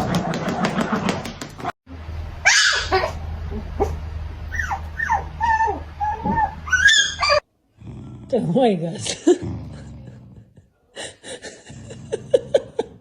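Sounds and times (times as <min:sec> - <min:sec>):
puppy yelp: 0:02.4 - 0:03.2, 0:03.8 - 0:07.4
puppy yapping: 0:02.4 - 0:07.4.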